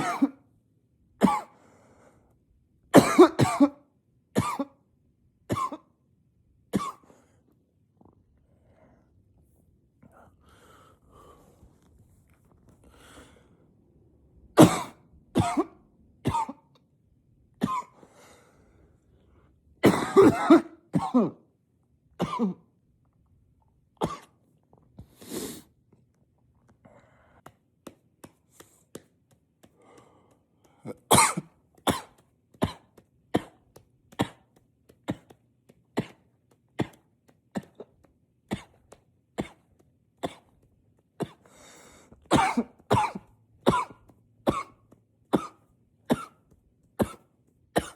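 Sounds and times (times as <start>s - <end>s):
man coughing: 0.0s - 0.4s, 1.2s - 1.6s, 3.0s - 4.8s, 14.6s - 15.7s, 16.3s - 16.6s, 17.6s - 18.0s, 19.8s - 21.4s, 22.2s - 22.7s, 30.8s - 33.6s, 42.3s - 44.8s.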